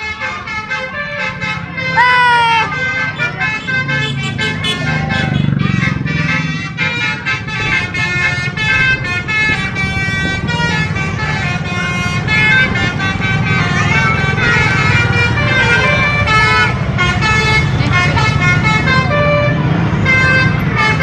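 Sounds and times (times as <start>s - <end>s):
air horns playing a tune: 0.0s - 21.0s
bus engine: 0.0s - 21.0s.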